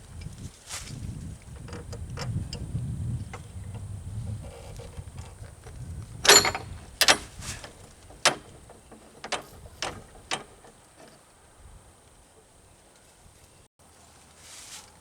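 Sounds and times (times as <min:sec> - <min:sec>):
sharp metallic clinks: 0:06.2 - 0:10.7.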